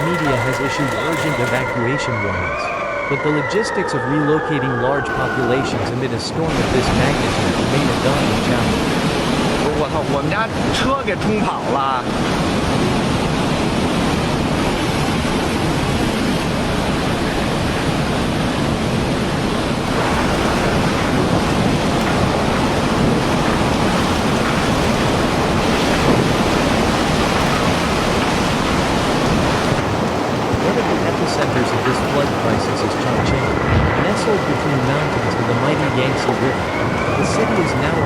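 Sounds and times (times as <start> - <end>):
floodwater rushing: 0.0 - 2.4, 19.8 - 38.0.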